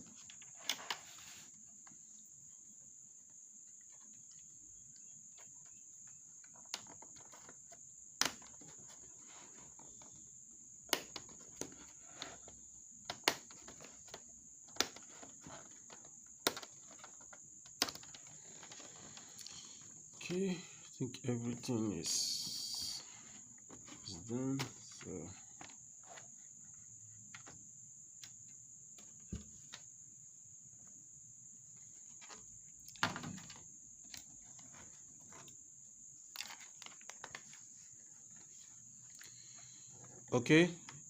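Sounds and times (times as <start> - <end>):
plastic parts and screws clicking: 13.0 - 19.9, 36.3 - 37.6.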